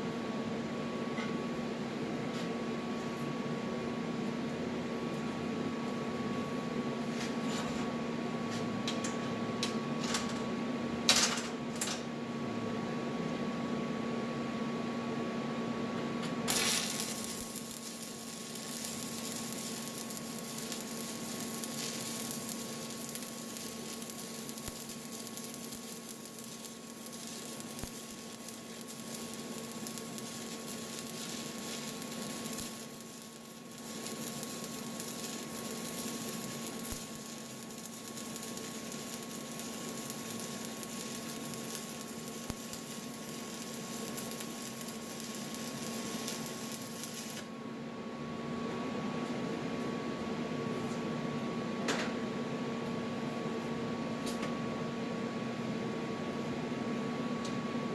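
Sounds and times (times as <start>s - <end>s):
bright hiss: 16.5s - 47.5s
crackling welding arc: 16.5s - 47.6s.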